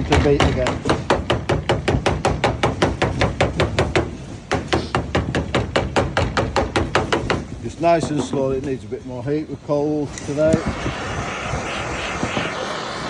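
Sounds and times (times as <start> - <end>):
tool tapping on sheet lead: 0.0 - 8.7.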